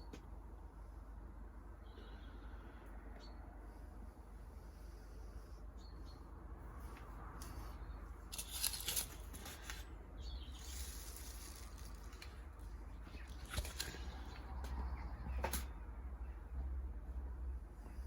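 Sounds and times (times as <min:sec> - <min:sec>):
hands rustling seeds and soil: 0:06.8 - 0:14.8.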